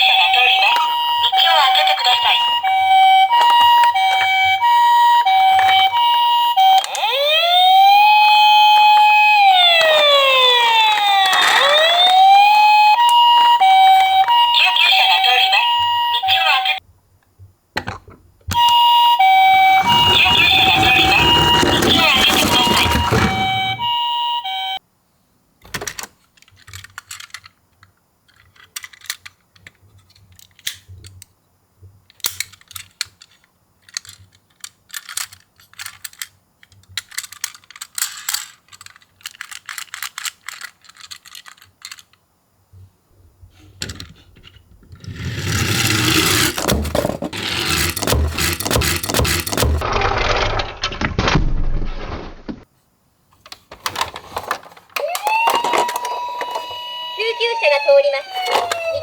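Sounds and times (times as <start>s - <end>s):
siren sound: 0.0s - 16.8s, 18.5s - 24.8s, 55.0s - 59.0s
rumble of toy cars rolling: 8.4s - 13.2s, 19.5s - 23.9s, 43.5s - 51.3s, 53.4s - 57.6s, 58.2s - 59.0s
toy cars clicking and rattling: 9.0s - 12.2s, 19.8s - 23.8s, 25.8s - 31.3s, 32.1s - 42.2s, 43.7s - 50.8s, 53.4s - 56.9s, 58.0s - 59.0s.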